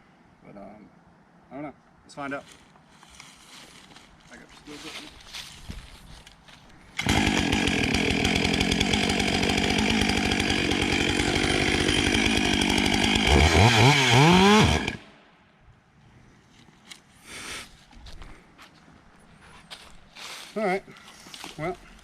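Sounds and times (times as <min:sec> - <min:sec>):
chainsaw running: 0:07.0 - 0:15.0.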